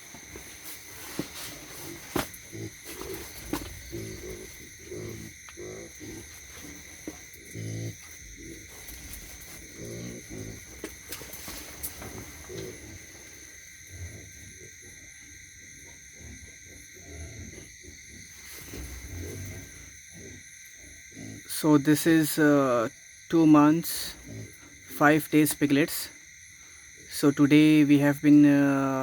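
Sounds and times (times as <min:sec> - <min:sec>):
piglets grunting: 0:01.5 - 0:11.4.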